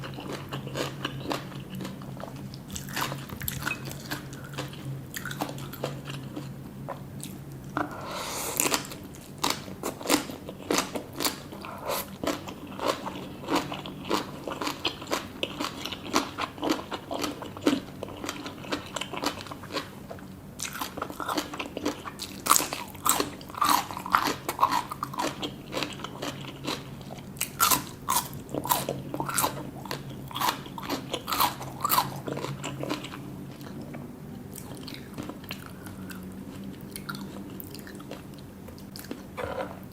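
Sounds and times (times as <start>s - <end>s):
crisp crunching and chewing: 0.0s - 6.5s, 8.6s - 33.8s.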